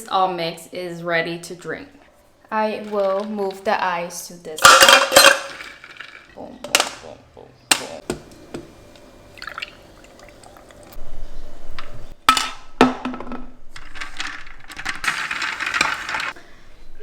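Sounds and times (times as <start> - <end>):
liquid pouring into cup of ice: 9.4 - 11.0.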